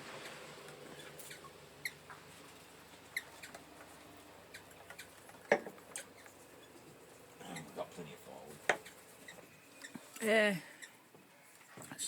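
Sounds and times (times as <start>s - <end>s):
birds squeaky chirps: 0.9s - 2.1s, 3.0s - 3.8s, 4.4s - 5.2s, 5.9s - 7.9s, 8.8s - 11.1s.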